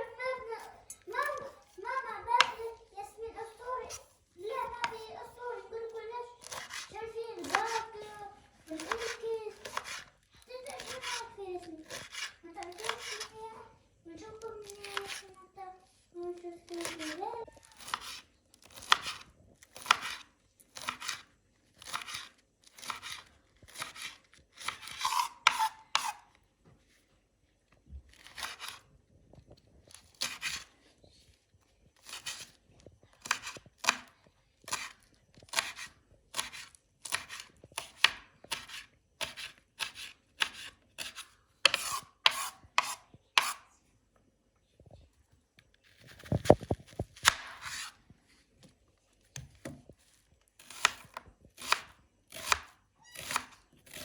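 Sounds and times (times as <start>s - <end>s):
knife chopping on cutting board: 2.3s - 2.7s, 4.6s - 5.1s, 6.4s - 7.9s, 8.8s - 10.1s, 10.8s - 11.2s, 11.8s - 13.3s, 14.8s - 15.3s, 16.8s - 26.2s, 28.2s - 28.8s, 33.2s - 34.1s, 34.7s - 43.6s, 46.1s - 48.0s, 49.4s - 49.9s, 50.6s - 54.0s.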